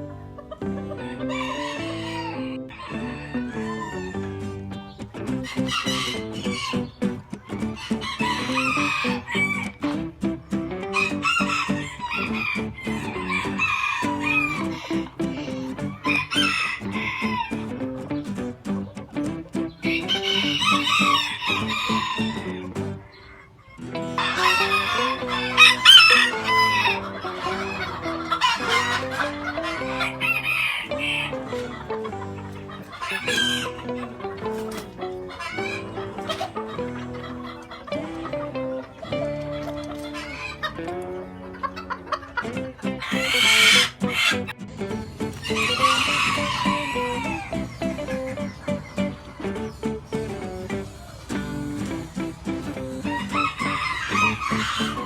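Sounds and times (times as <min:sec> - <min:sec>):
chickens clucking: 0:00.0 - 0:55.0
music with plucked notes: 0:00.0 - 0:55.0
rooster crowing: 0:01.0 - 0:04.4, 0:07.8 - 0:09.8, 0:11.0 - 0:15.2, 0:16.0 - 0:17.6, 0:20.0 - 0:22.7, 0:24.2 - 0:31.7, 0:45.4 - 0:47.6, 0:53.0 - 0:55.0.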